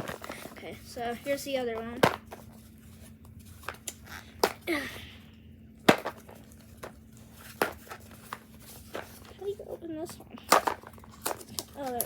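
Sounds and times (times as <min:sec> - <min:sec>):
packaging rustle: 0:00.0 - 0:01.4
faint steady hum: 0:00.0 - 0:12.0
plastic packaging clicks and taps: 0:05.9 - 0:07.0, 0:10.4 - 0:12.0.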